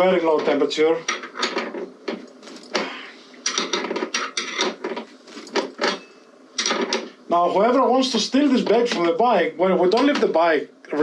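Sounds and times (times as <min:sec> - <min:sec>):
hardware clicking and clattering: 0:00.3 - 0:07.1.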